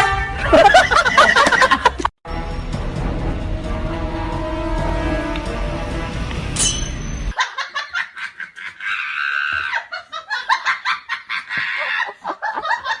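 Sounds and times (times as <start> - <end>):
music: 0.0 - 0.8, 2.2 - 7.3
high-pitched laughter: 0.4 - 2.1, 7.4 - 13.0.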